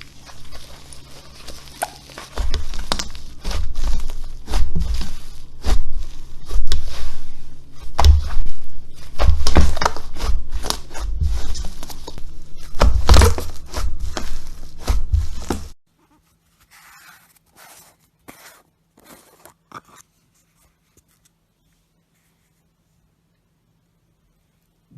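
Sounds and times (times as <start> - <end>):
slime squishing with sticky pops: 0.0 - 15.7.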